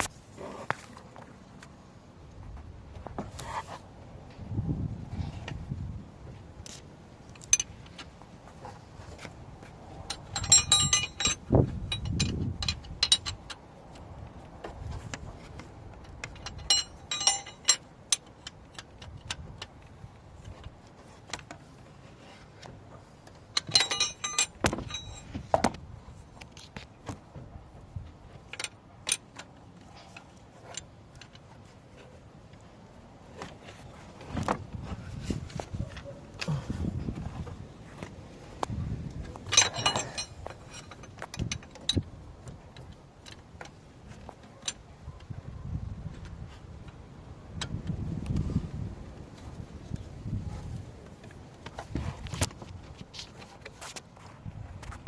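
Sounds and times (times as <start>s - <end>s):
metal hand tools clinking: 10.1s - 13.6s, 16.1s - 19.4s, 23.6s - 25.4s, 39.4s - 42.0s.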